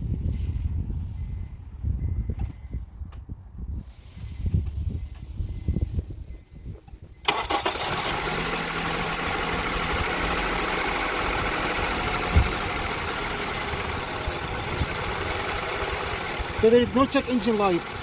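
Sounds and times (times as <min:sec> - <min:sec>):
car engine starting and idling: 0:07.2 - 0:18.0.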